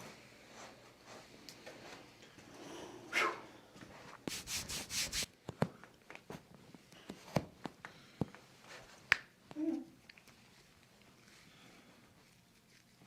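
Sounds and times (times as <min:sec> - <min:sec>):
hands brushing over clothing: 0:04.2 - 0:05.3.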